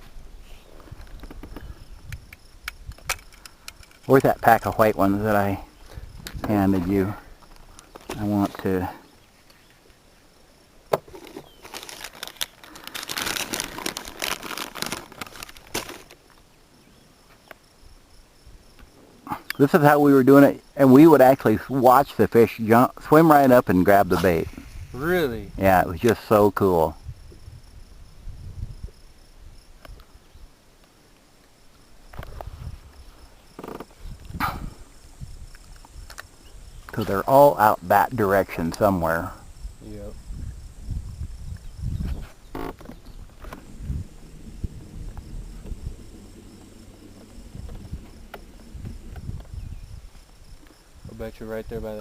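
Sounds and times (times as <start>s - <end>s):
insects chirping: 0.0s - 52.0s
plastic packet crinkling: 11.2s - 16.2s
low rumbles: 39.3s - 51.8s.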